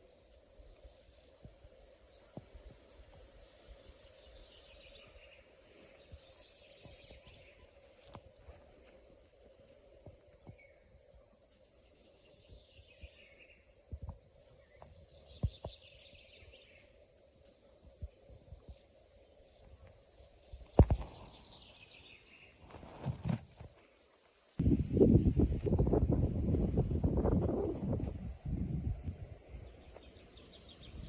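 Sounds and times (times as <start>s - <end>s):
steady hiss: 0.0s - 31.0s
footsteps: 22.6s - 23.9s.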